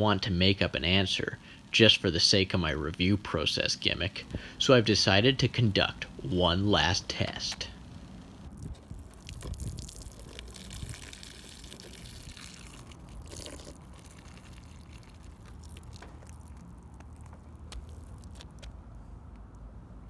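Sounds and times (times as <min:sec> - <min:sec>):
short hiss: 0:04.2 - 0:08.4
liquid dripping and trickling: 0:09.1 - 0:18.4.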